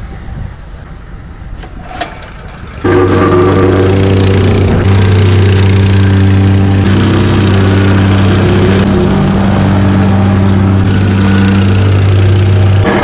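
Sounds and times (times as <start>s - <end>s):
engine running with low hum: 0.1s - 13.0s.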